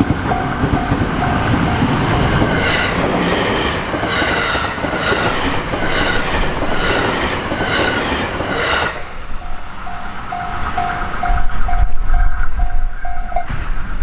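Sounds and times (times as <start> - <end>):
crossing warning bell dinging: 0.0 - 14.0
train wheels clattering on rails: 0.0 - 14.0.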